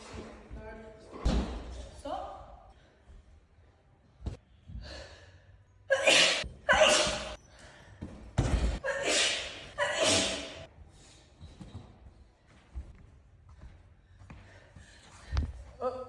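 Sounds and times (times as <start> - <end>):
woman sneezing: 5.9 - 7.4, 8.8 - 10.7.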